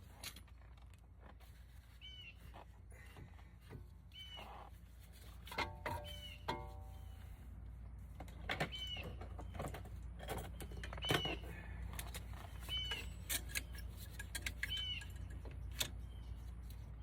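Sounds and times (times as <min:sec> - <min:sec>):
low steady hum: 0:00.0 - 0:17.0
hand tools clicking on metal: 0:12.0 - 0:16.0.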